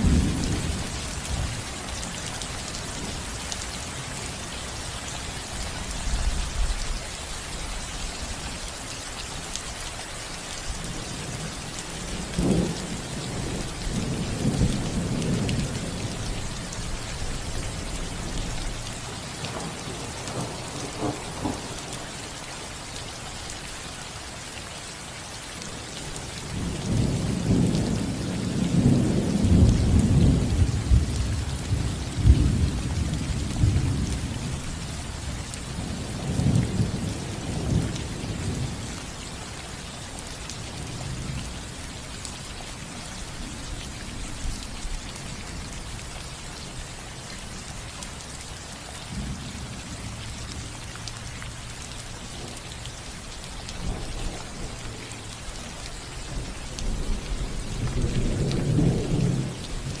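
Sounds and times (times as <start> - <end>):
rain on a roof: 0.0 - 60.0
thunder rumbling: 19.4 - 22.0, 56.3 - 60.0.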